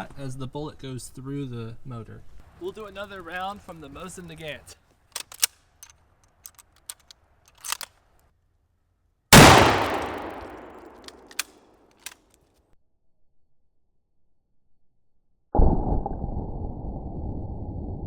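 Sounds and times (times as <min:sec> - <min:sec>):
small clicks: 0:05.2 - 0:05.6, 0:06.5 - 0:07.9, 0:09.4 - 0:12.2
rifle shot with echo: 0:09.4 - 0:12.2.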